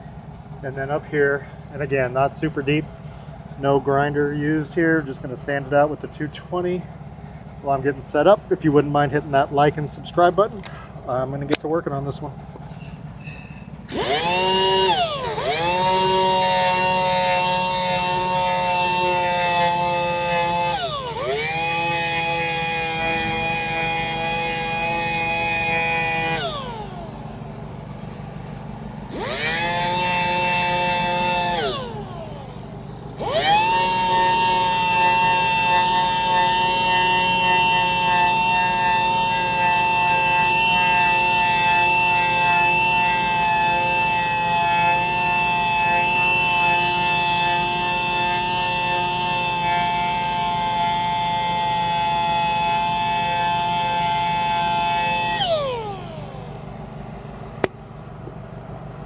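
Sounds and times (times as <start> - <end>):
power sander whining: 12.1 - 58.4.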